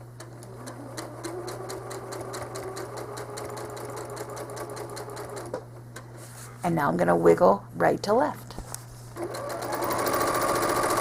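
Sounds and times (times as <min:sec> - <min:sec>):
sewing machine motor hum: 0:00.0 - 0:06.2, 0:09.2 - 0:11.0.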